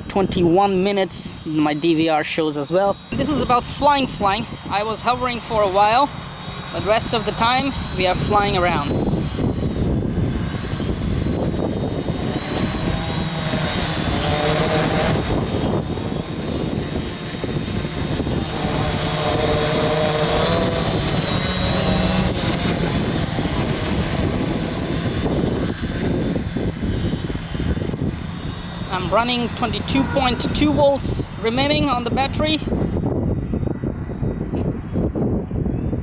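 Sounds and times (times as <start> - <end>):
drone propellers whining: 0.0 - 36.0
wind buffeting microphone: 0.0 - 36.0.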